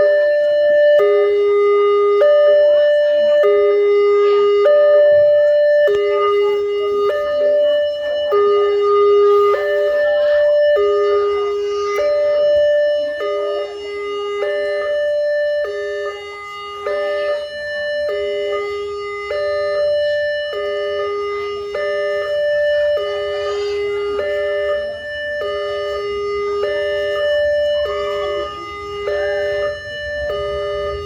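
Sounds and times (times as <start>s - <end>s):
two-tone level crossing alarm: 0.0s - 31.0s.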